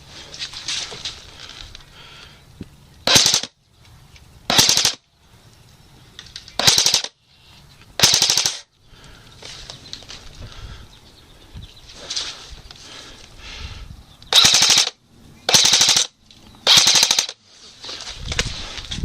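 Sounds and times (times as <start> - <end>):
airsoft gun full-auto bursts: 3.0 - 3.5, 4.5 - 5.0, 6.6 - 7.2, 8.0 - 8.7, 14.3 - 17.4.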